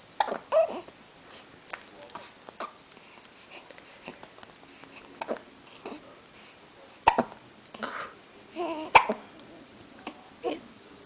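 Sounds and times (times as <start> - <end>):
baby hiccupping: 0.2 - 0.9, 7.0 - 7.4, 8.6 - 9.2.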